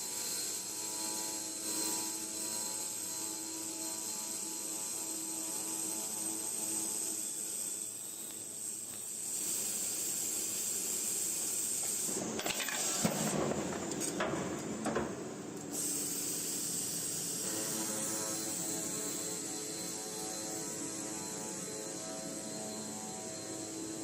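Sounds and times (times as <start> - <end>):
metal circular saw running: 17.0 - 24.0.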